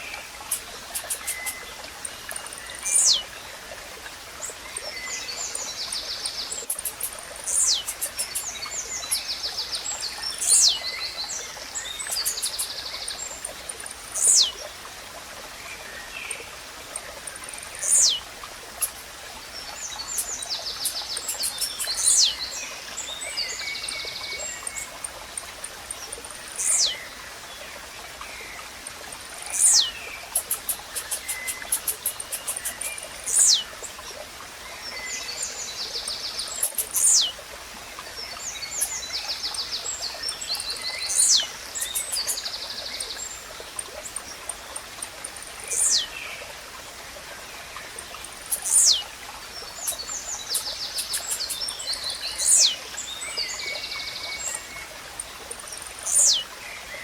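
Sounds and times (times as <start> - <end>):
small birds trilling and chirping: 0.0 - 14.9, 15.5 - 57.0
running water: 0.0 - 57.0.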